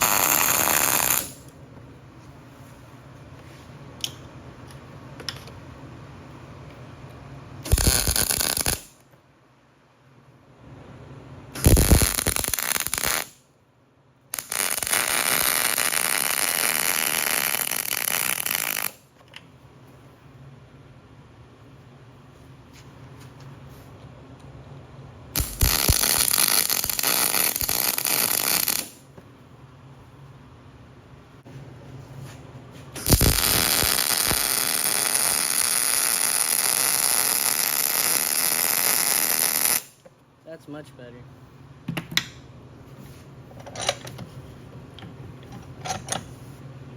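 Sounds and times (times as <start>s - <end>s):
arc welding crackle: 0.0s - 1.5s, 7.6s - 9.0s, 11.6s - 13.4s, 14.3s - 19.1s, 25.4s - 29.1s, 32.9s - 40.0s.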